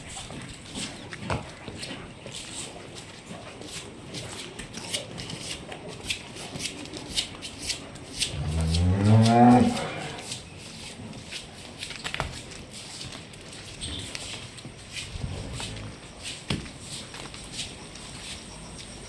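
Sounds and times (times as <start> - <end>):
cow mooing: 8.3 - 10.3, 15.2 - 16.1.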